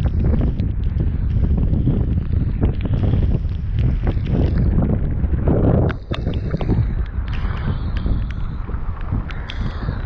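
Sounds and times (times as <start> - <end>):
wind buffeting microphone: 0.0 - 10.0
sharp ticks: 5.8 - 10.0.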